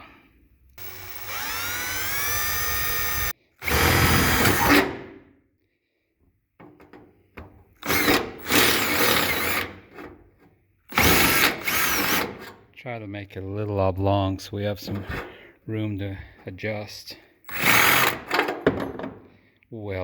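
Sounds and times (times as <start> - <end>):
power drill boring through metal: 0.8 - 5.1, 7.8 - 9.8, 10.9 - 12.5, 17.5 - 18.4.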